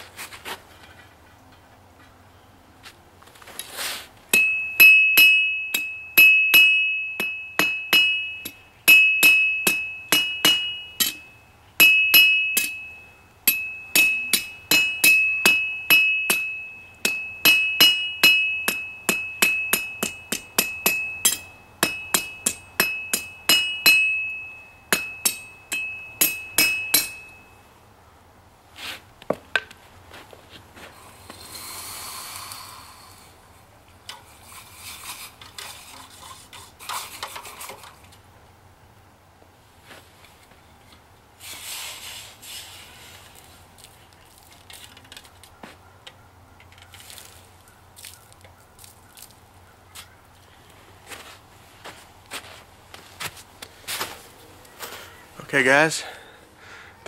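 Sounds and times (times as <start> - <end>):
hammer striking steel anvil: 4.3 - 27.6
short hiss: 31.0 - 33.3, 41.4 - 43.3.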